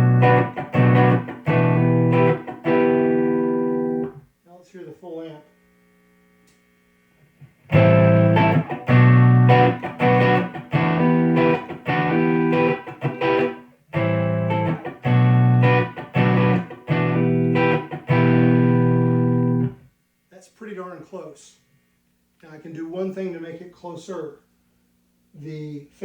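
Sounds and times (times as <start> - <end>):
clean electric guitar chords: 0.0 - 4.2, 7.7 - 19.9.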